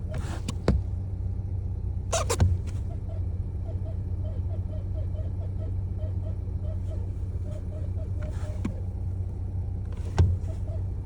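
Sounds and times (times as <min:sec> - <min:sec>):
car engine humming: 0:00.0 - 0:11.0
faint chirping squeak: 0:02.1 - 0:09.1, 0:09.9 - 0:11.0.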